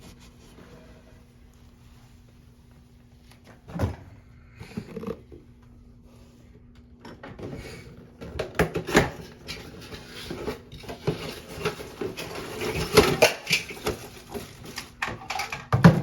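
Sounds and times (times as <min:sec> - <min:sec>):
clatter of plastic parts handled: 0:08.2 - 0:16.0.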